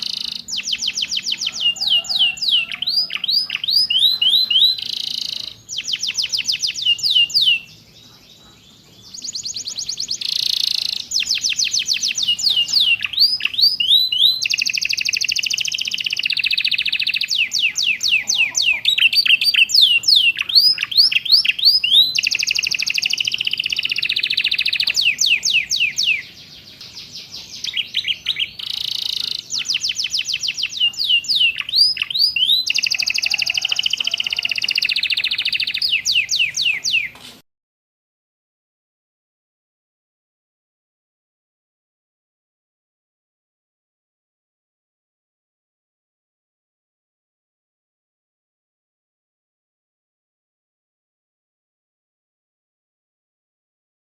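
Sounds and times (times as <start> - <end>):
canary singing trills and whistles: 0.0 - 37.2.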